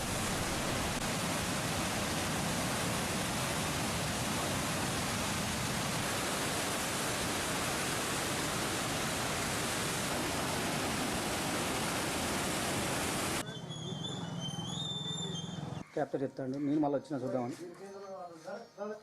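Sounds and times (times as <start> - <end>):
water rushing: 0.0 - 13.4.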